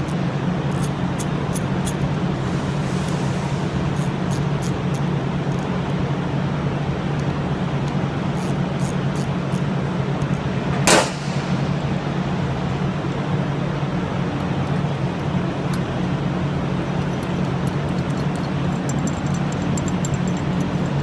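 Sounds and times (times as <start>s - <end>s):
socket wrench clicks: 0.0s - 2.1s, 4.0s - 5.7s, 7.2s - 11.0s, 16.9s - 21.0s
shop background hum: 0.0s - 21.0s
sharp loud crack: 10.8s - 11.9s.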